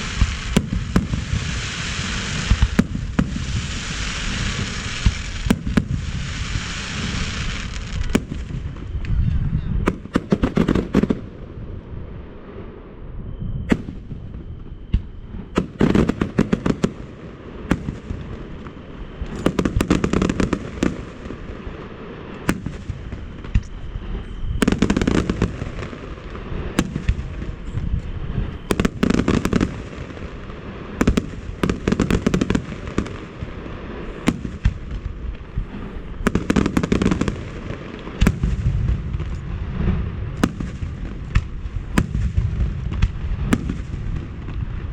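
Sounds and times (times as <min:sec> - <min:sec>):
firework sharp cracks: 0:00.0 - 0:08.9, 0:09.8 - 0:11.3, 0:28.7 - 0:44.9
firework booms: 0:00.0 - 0:11.8, 0:13.6 - 0:44.9.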